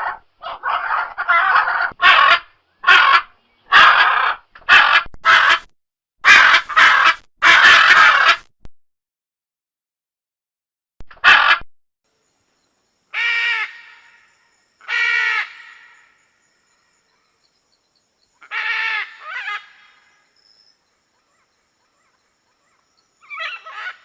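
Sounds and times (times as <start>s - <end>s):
macaw squawks: 0.0s - 8.4s, 11.2s - 11.6s, 18.4s - 20.0s, 21.2s - 24.0s.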